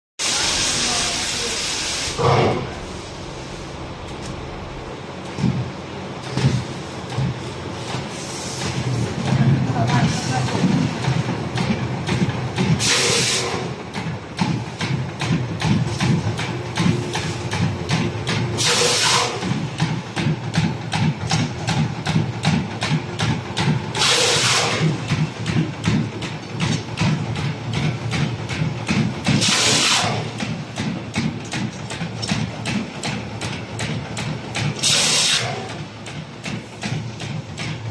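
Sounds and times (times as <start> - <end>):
loud hiss: 0.2 - 3.8
rewinding machine clattering: 3.9 - 37.9.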